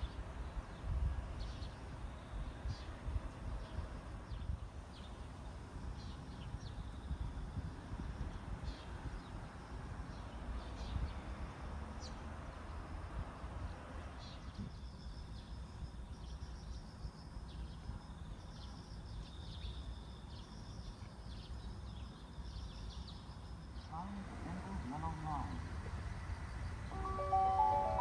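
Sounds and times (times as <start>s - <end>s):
high-pitched chirps: 26.9s - 28.0s.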